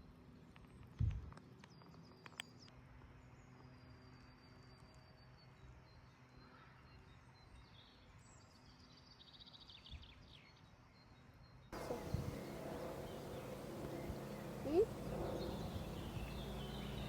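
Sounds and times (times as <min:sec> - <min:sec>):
distant birds chirping: 0:11.8 - 0:17.0.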